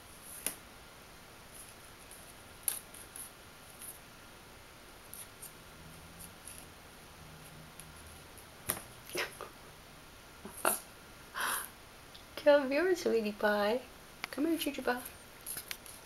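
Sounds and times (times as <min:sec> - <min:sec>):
kitten claws clicking and scratching: 0:15.4 - 0:16.0.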